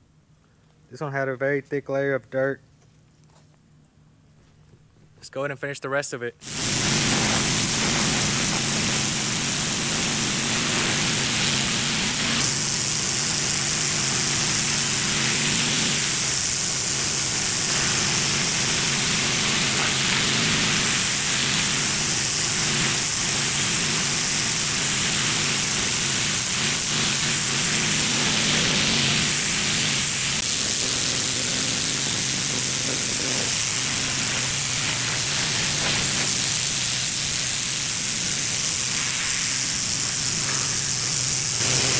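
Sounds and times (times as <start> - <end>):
pressure washer spray hissing: 6.4 - 41.9.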